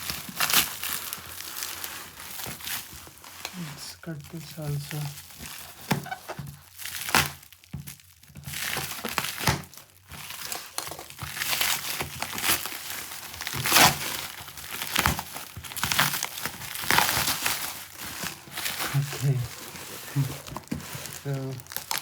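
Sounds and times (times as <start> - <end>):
cardboard rustling and scraping: 0.0 - 22.0
cardboard sharp crack: 5.4 - 19.0.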